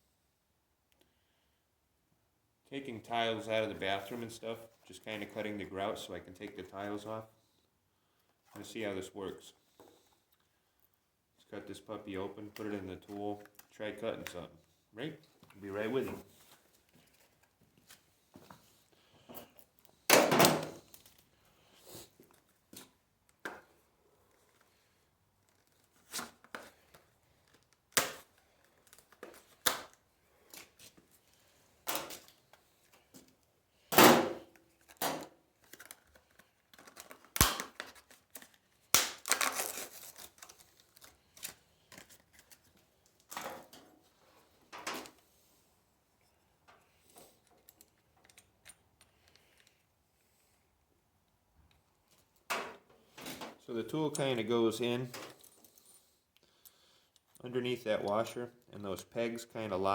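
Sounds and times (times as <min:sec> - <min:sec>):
plastic and cardboard tearing: 0:34.1 - 0:42.7.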